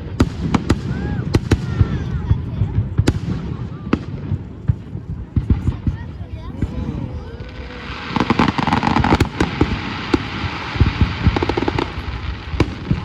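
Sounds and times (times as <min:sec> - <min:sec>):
fireworks banging and crackling: 0:00.0 - 0:13.0
firework hiss: 0:06.8 - 0:13.0.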